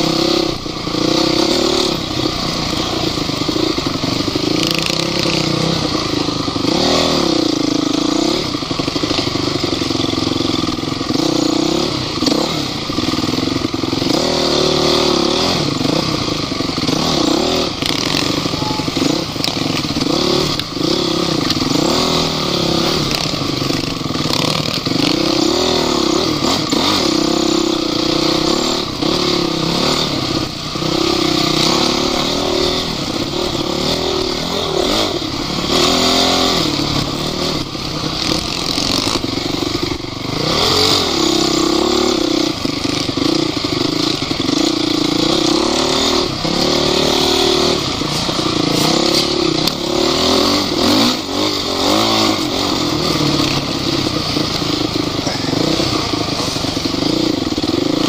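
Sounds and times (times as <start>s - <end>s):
off-road vehicle engine revving: 0.0s - 58.0s
clatter: 0.1s - 58.0s.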